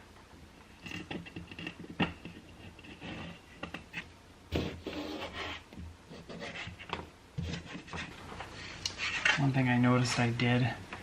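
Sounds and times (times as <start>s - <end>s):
frame scraping: 6.2s - 9.6s.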